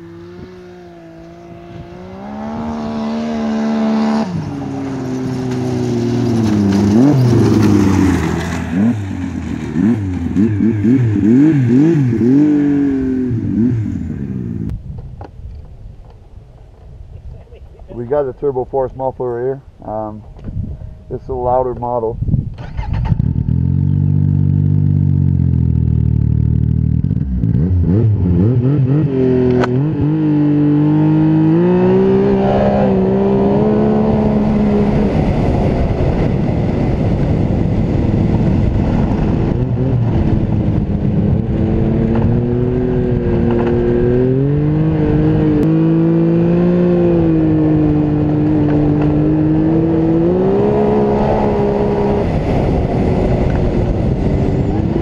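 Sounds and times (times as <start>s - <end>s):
snowmobile engine revving: 0.0s - 14.6s, 27.2s - 55.0s.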